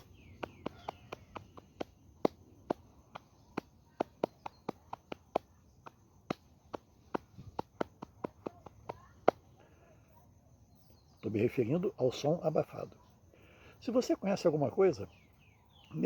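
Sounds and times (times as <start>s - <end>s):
cupped hands clapping: 0.0s - 9.4s.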